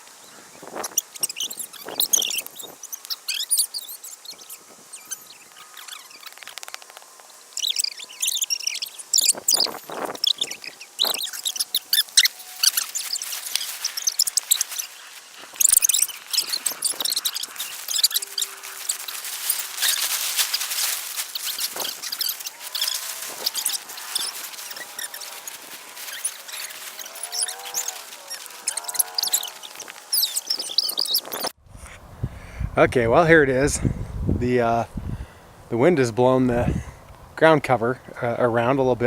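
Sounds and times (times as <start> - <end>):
squeaky gliding tones: 0.8 - 31.5
plastic tarp crinkling: 9.3 - 31.5.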